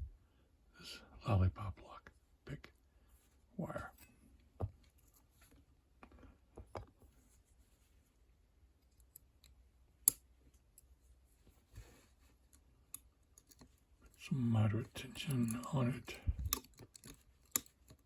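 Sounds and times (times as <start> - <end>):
metal clicks in padlock: 9.0 - 10.2, 16.4 - 18.0.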